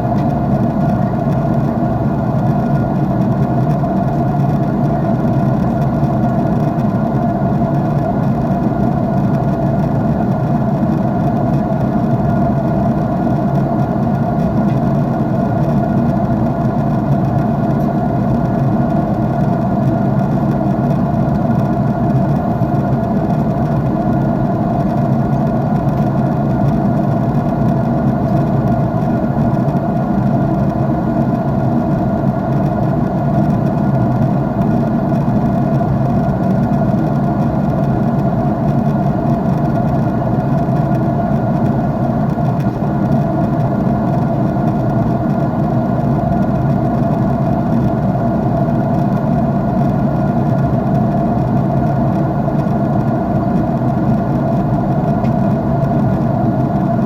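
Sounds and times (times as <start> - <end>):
jet engine cabin drone: 0.0 - 57.0.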